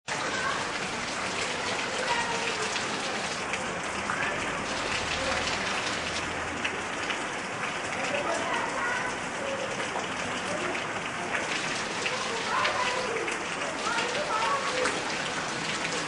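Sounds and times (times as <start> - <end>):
heavy rain on leaves: 0.1 - 16.0.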